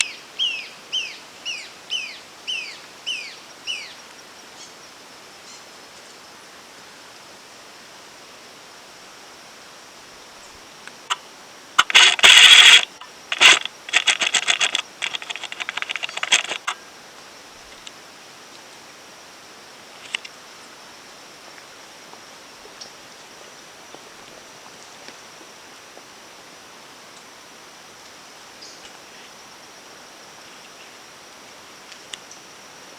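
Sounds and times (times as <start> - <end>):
faint high insect buzz: 0.0 - 32.9
bird rattling calls: 11.8 - 16.8.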